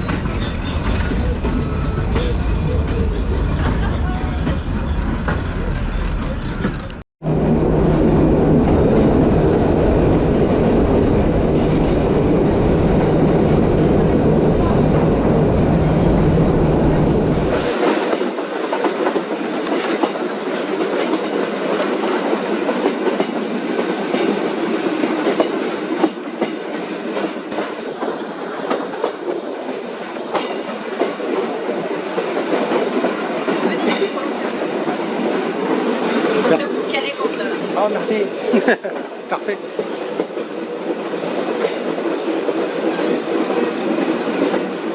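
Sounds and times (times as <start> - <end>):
train wheels clattering on track: 0.0 - 7.0, 17.5 - 44.9.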